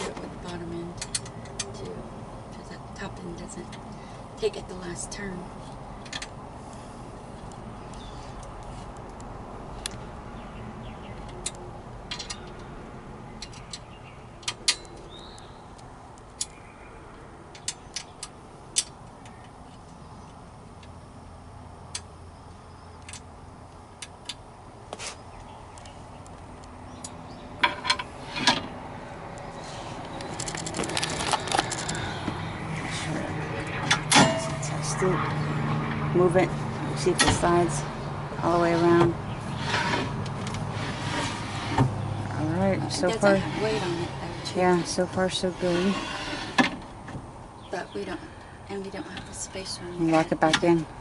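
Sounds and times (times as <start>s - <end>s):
metal clatter: 33.9s - 34.7s.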